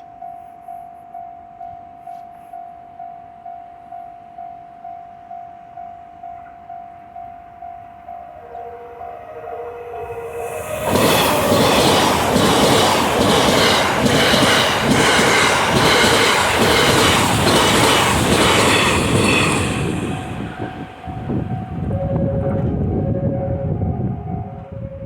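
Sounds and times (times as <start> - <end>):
two-tone crossing warning bell: 0.0 - 25.0
train wheels clattering over rail joints: 10.7 - 21.6.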